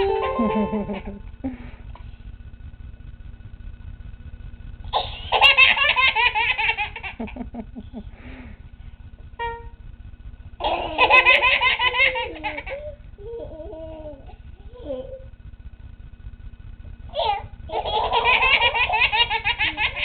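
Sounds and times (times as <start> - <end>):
electronic keyboard note: 0.0 - 1.2, 9.4 - 9.9.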